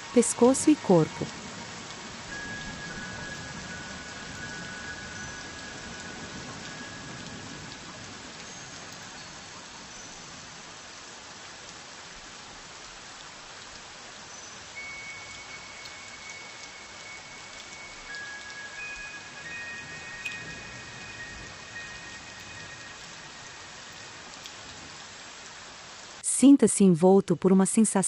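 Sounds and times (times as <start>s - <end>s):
rain hissing: 0.0s - 26.3s
faint sustained chime tones: 0.1s - 10.8s, 14.3s - 24.8s.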